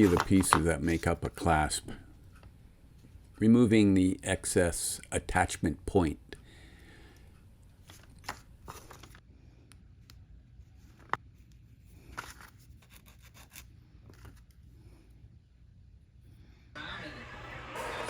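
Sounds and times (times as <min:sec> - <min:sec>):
hand tool scraping model parts: 0:00.0 - 0:01.0.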